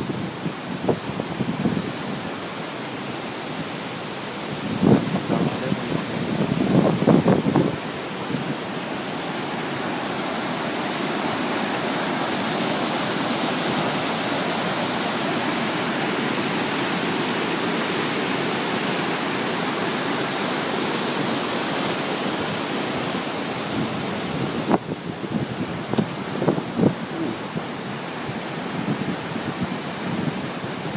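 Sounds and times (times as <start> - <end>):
waterfall roaring: 0.0 - 30.9.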